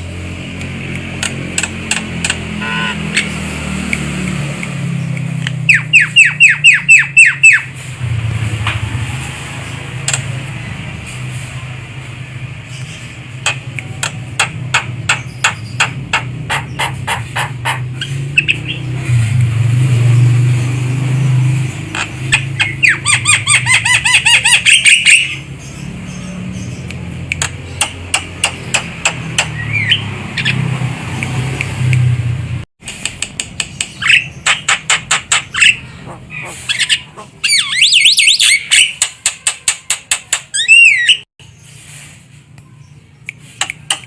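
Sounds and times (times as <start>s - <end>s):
bird calling with sharp clicks: 0.6s - 7.6s, 12.8s - 18.8s, 26.6s - 30.6s, 33.0s - 35.8s, 42.5s - 44.0s
bird harsh chattering: 12.7s - 18.9s, 21.9s - 30.6s, 33.8s - 41.2s.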